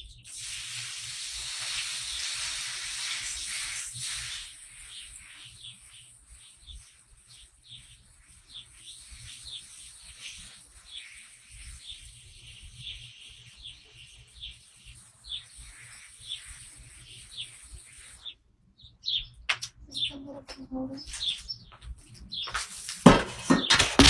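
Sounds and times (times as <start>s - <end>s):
small bird chirping: 4.8s - 22.7s.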